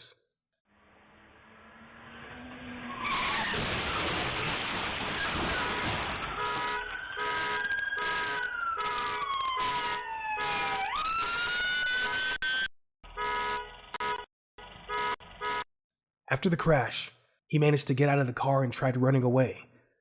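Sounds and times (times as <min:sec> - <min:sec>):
car speeding past: 0:00.8 - 0:04.7
police siren wailing: 0:00.8 - 0:15.1.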